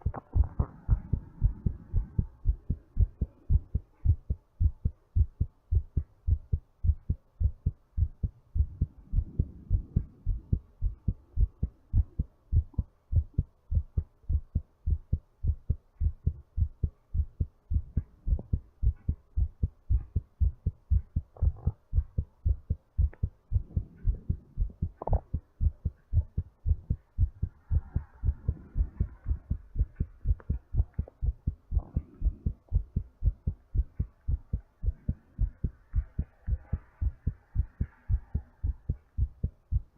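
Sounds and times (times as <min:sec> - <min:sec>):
heartbeat thumps: 0:00.0 - 0:39.9
deep breathing: 0:27.2 - 0:30.4.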